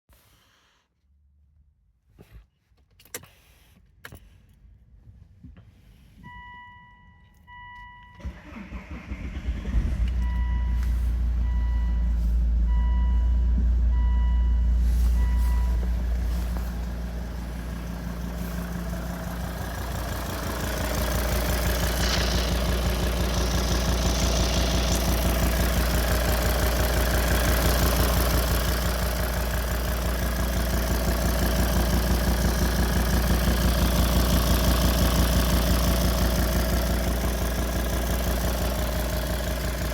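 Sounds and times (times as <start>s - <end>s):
dashboard warning chime beeping: 6.2s - 8.3s, 10.2s - 18.9s
diesel engine cranking and idling: 8.0s - 39.9s
engine ticking: 8.2s - 39.9s.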